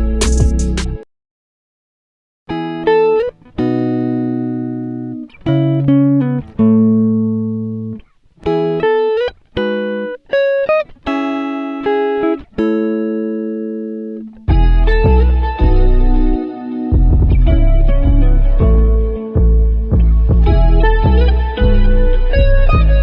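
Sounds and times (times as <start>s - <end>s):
guitar plucking notes and chords: 0.0s - 1.0s, 2.5s - 23.0s.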